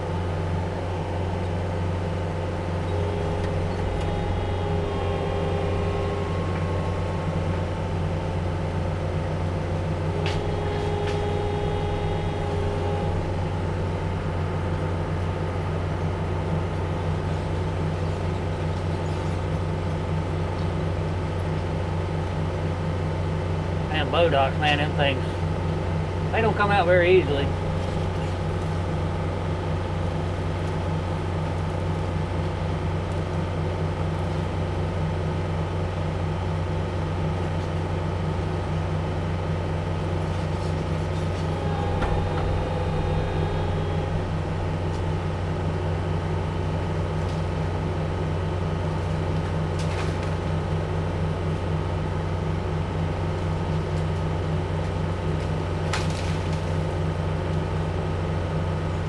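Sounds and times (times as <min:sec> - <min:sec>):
diesel engine running: 0:00.0 - 0:59.0
faint whine: 0:02.4 - 0:18.2, 0:23.9 - 0:30.8, 0:40.2 - 0:48.0.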